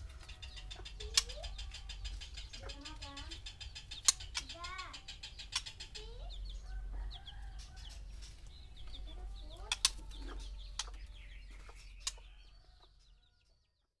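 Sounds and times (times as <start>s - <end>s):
bird chirps and whistled notes: 0.0s - 13.6s
sharp bird clicks: 0.2s - 6.5s, 7.5s - 12.4s.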